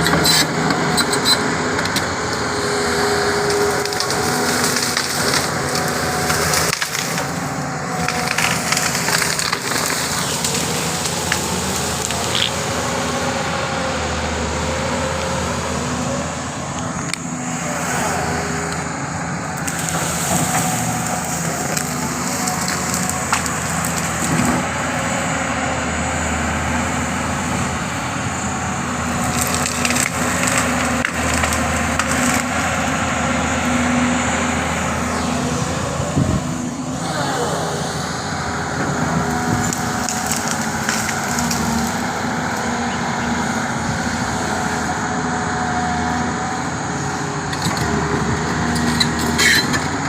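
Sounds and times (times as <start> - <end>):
excavator engine running: 0.0 - 50.0
wood cracking and splintering: 3.4 - 12.8, 19.6 - 24.7, 29.1 - 32.9, 38.8 - 42.3.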